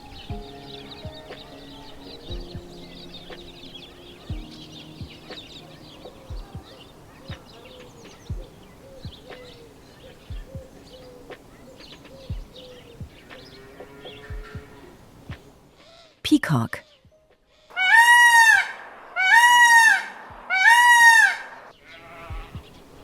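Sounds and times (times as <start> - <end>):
low thumps: 0.0 - 1.6, 2.3 - 3.6, 4.3 - 5.5, 6.1 - 7.5, 8.1 - 9.5, 10.3 - 11.5, 12.2 - 15.5, 22.3 - 23.0
peafowl honking calls: 0.0 - 16.1, 17.7 - 23.0
small birds chirping: 0.0 - 16.1, 21.7 - 23.0.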